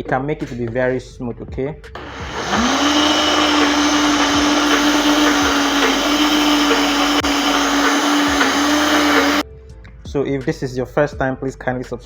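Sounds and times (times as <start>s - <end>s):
blender running: 2.0s - 9.4s.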